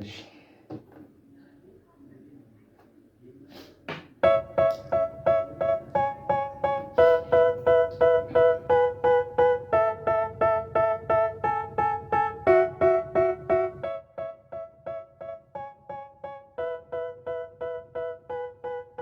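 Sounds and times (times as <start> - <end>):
keyboard playing repeated chords: 4.2 - 19.0.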